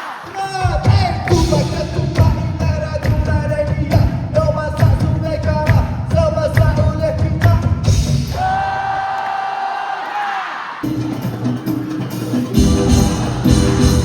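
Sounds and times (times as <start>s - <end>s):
live band with low beat: 0.6s - 8.3s, 10.8s - 14.0s.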